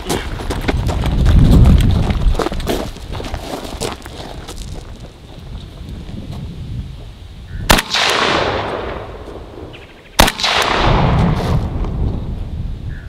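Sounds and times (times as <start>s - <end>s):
rifle shots with echo: 7.7s - 12.0s.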